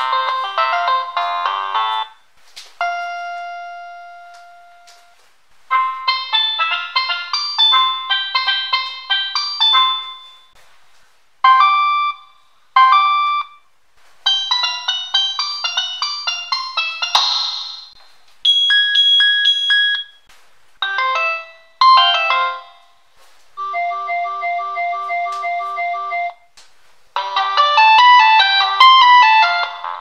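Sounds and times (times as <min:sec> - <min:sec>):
chiming polyphonic ringtone melodies: 0:00.0 - 0:02.1, 0:02.8 - 0:05.1, 0:05.7 - 0:10.6, 0:14.3 - 0:18.0, 0:20.8 - 0:22.9, 0:23.6 - 0:26.4.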